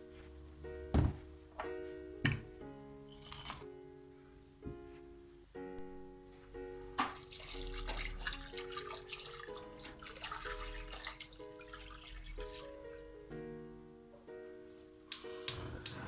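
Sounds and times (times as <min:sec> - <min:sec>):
gentle piano music: 0:00.0 - 0:16.0
tap water running into sink: 0:07.0 - 0:12.7.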